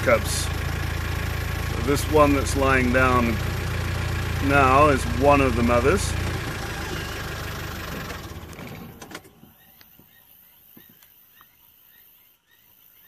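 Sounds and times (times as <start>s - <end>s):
vehicle engine running: 0.0s - 9.8s.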